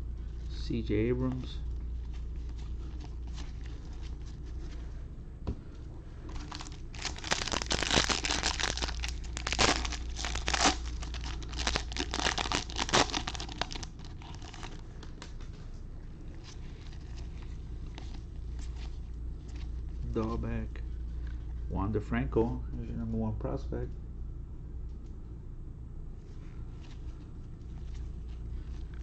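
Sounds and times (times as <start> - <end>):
foil wrapper crinkling and tearing: 6.3 - 15.4.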